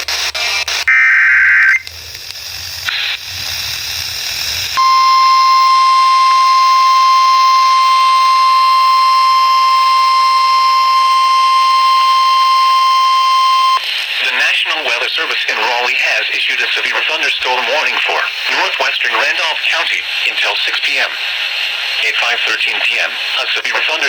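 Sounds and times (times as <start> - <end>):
radio static hiss: 0.0 - 24.0
warbling digital data tones: 4.8 - 13.8
steady high warning tone: 4.8 - 13.9.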